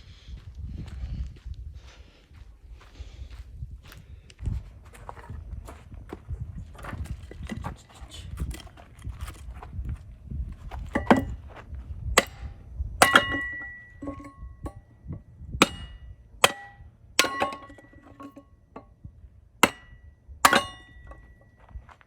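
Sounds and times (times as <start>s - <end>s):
metal parts clanking: 12.2s - 14.8s, 15.6s - 19.0s, 19.6s - 21.6s.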